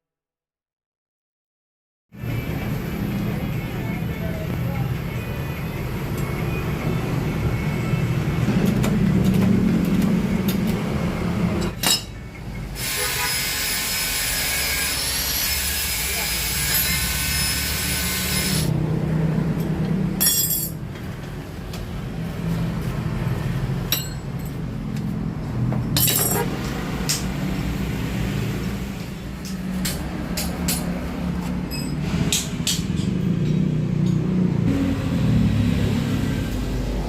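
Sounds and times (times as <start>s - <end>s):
hand tools clinking on metal: 20.2s - 20.8s, 23.9s - 24.6s, 25.9s - 26.5s.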